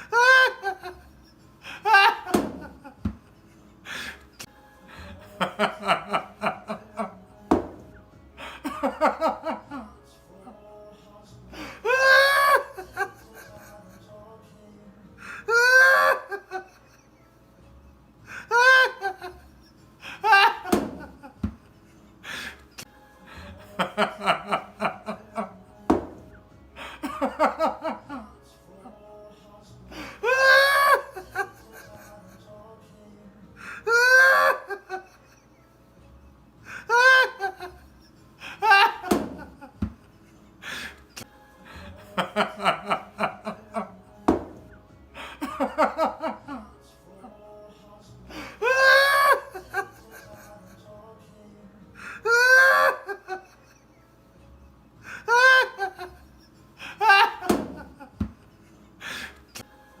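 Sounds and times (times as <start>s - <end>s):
person laughing: 0.0s - 1.0s, 1.6s - 3.1s, 8.4s - 9.9s, 11.8s - 13.8s, 15.5s - 17.0s, 18.4s - 19.4s, 20.0s - 21.4s, 26.8s - 28.3s, 30.2s - 32.2s, 33.8s - 35.4s, 36.9s - 37.8s, 38.4s - 39.8s, 52.2s - 53.8s, 55.2s - 56.2s, 56.8s - 58.2s
breathy gasp: 59.0s - 59.5s.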